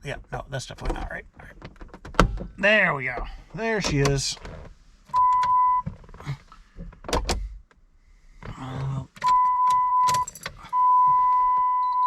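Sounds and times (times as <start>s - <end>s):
high electronic beep tone: 10.8s - 12.0s.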